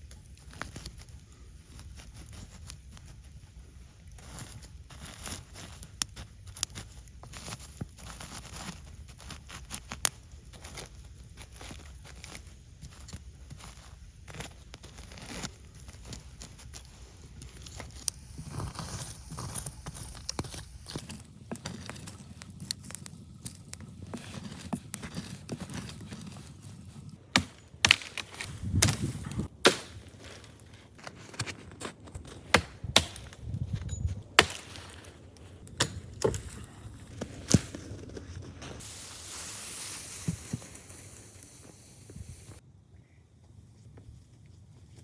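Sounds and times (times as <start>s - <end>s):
wood cracking and knocking: 27.3s - 38.1s
steady hiss: 38.5s - 42.6s.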